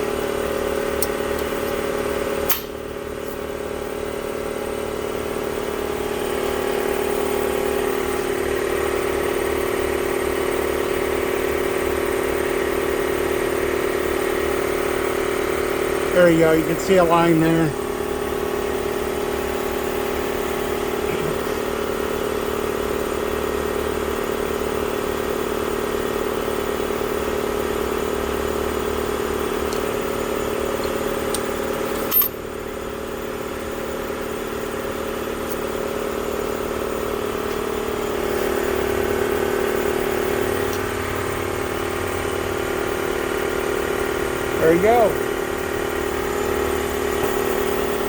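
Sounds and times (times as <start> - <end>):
sharp click: 2.5 - 2.8
valve seat grinder motor humming: 27.0 - 44.6.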